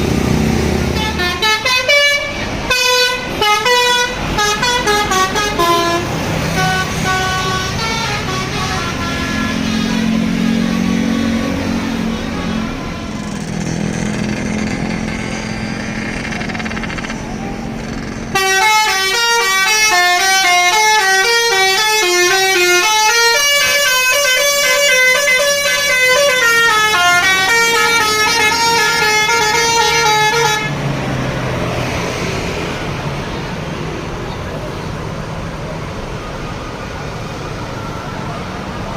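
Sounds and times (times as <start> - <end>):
road and engine noise: 0.0 - 38.9
bus musical horn melody: 0.8 - 13.6, 18.3 - 30.8.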